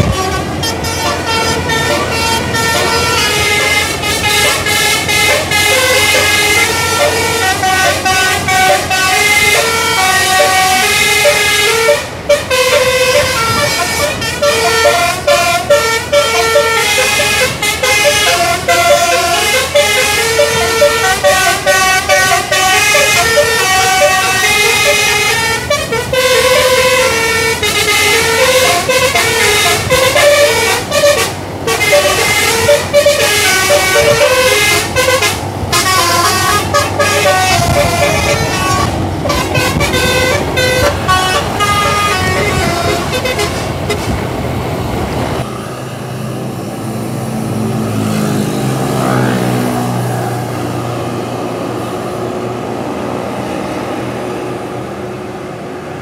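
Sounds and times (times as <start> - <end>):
multi-tone air horn melody: 0.0 - 44.3.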